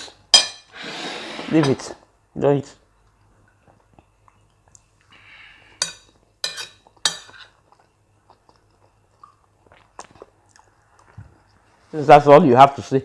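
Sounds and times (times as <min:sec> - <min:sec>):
metal spoon scraping a plate: 0:00.0 - 0:01.9, 0:05.8 - 0:07.6
spoon clinking on a plate: 0:00.3 - 0:00.7, 0:05.8 - 0:07.5.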